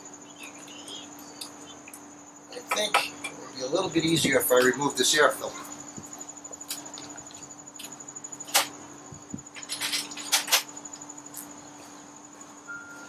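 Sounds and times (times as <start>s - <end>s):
faint steady hum: 0.0s - 13.0s
tools clicking and knocking on parts: 9.5s - 10.7s.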